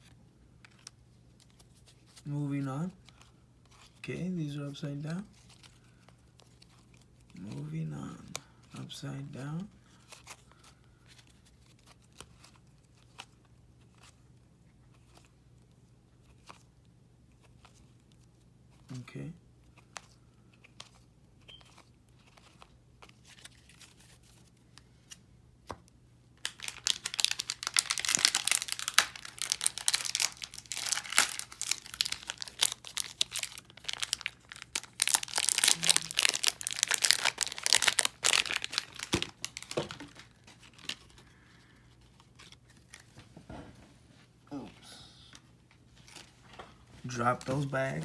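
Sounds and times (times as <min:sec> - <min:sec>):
foil wrapper tearing and crinkling: 0:26.4 - 0:41.2.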